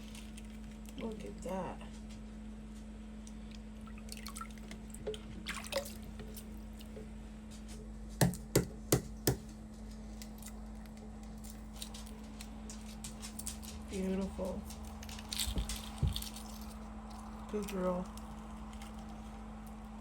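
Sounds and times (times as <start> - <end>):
egg shell crackling: 0.0 - 1.4, 9.3 - 20.0.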